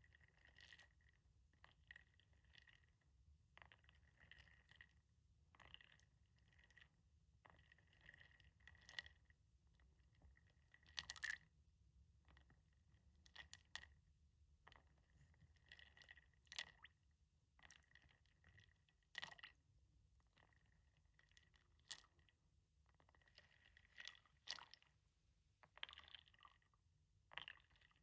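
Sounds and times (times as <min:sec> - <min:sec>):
light water sounds: 0:14.6 - 0:17.0, 0:22.9 - 0:25.0, 0:25.6 - 0:28.0.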